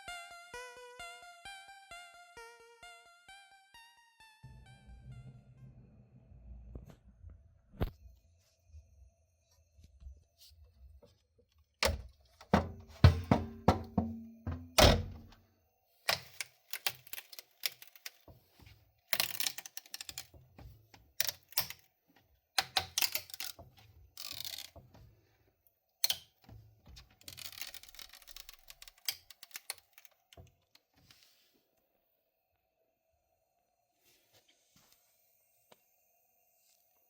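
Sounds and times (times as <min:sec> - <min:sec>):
hard objects clicking and knocking: 0:11.8 - 0:15.4, 0:16.1 - 0:18.4, 0:19.2 - 0:21.9, 0:22.6 - 0:25.1, 0:26.0 - 0:30.8.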